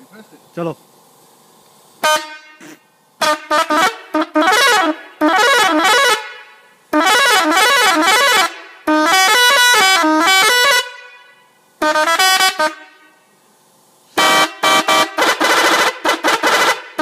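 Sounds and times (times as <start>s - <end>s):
multi-tone bus horn tune: 2.0s - 13.3s, 14.2s - 17.0s
short horn blasts: 2.0s - 13.4s, 14.1s - 17.0s.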